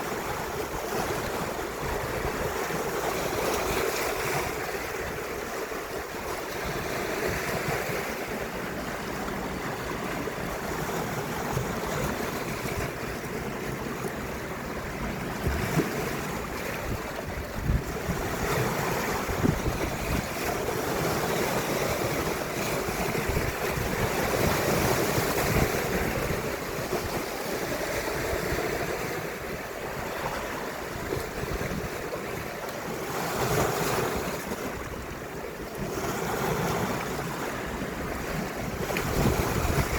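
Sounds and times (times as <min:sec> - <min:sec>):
waves washing ashore: 0:00.0 - 0:39.9
wind buffeting microphone: 0:14.9 - 0:32.6, 0:33.9 - 0:39.9.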